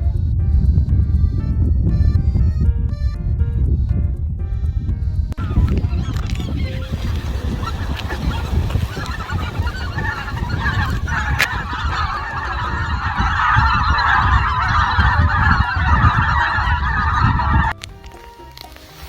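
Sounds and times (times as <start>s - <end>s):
low wind rumble on microphone: 0.0s - 17.8s
chorus of bird calls: 5.4s - 17.8s
quiet background music: 17.4s - 19.0s.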